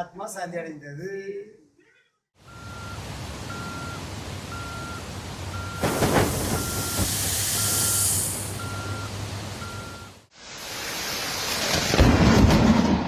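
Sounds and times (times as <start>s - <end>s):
electronic warning alarm beeping: 2.4s - 10.2s
loud rushing hiss with knocks: 5.8s - 8.6s.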